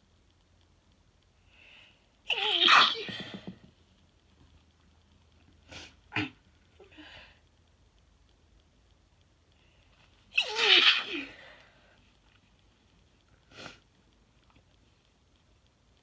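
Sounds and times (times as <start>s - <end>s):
person sneezing: 2.3s - 3.4s.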